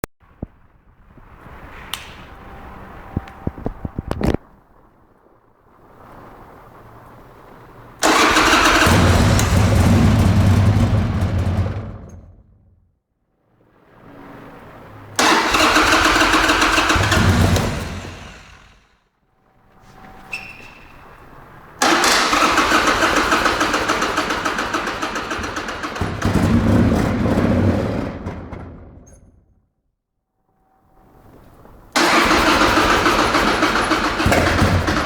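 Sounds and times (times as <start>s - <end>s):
motorcycle starter cranking engine: 8.0s - 12.2s, 15.2s - 18.8s, 21.8s - 27.1s, 32.0s - 35.0s.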